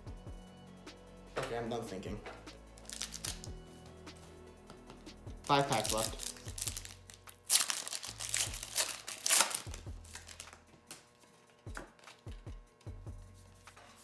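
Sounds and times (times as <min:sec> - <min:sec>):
foil wrapper crinkling and tearing: 0:02.8 - 0:03.5, 0:05.5 - 0:11.2.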